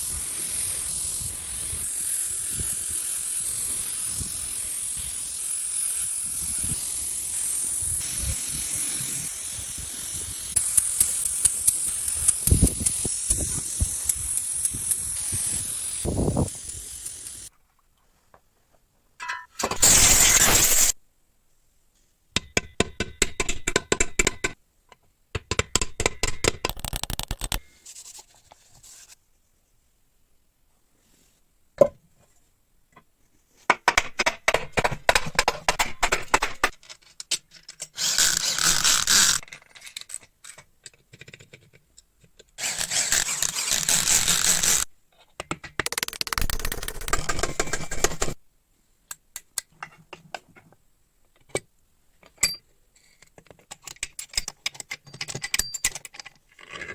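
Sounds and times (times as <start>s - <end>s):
steady hissing: 0.0s - 17.5s, 19.8s - 21.0s.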